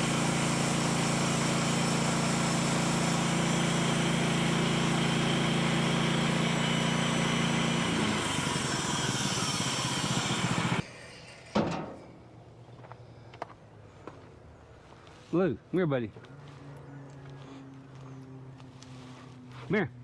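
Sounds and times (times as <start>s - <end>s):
small gasoline engine running: 0.0s - 10.8s.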